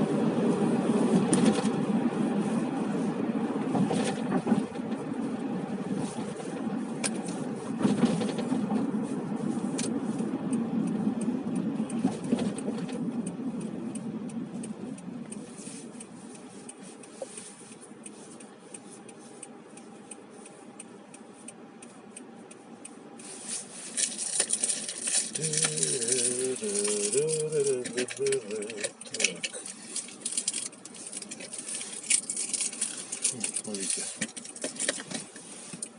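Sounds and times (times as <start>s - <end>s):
road and engine rumble: 0.0s - 35.9s
small clicks and rattles: 23.2s - 35.9s.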